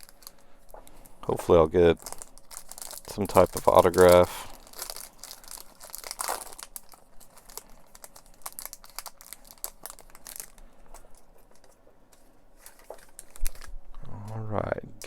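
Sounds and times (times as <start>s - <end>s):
wrapper crinkling and tearing: 0.0s - 13.8s.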